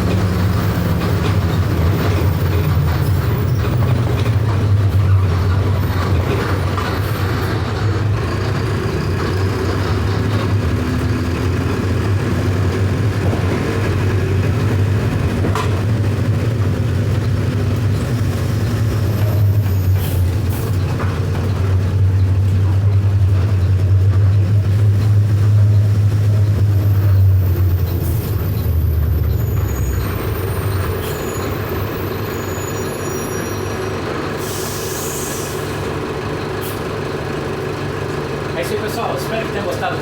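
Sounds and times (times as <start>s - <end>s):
bus diesel engine running: 0.0s - 40.0s
air brakes hissing: 19.1s - 20.8s, 26.9s - 35.9s, 36.6s - 36.9s.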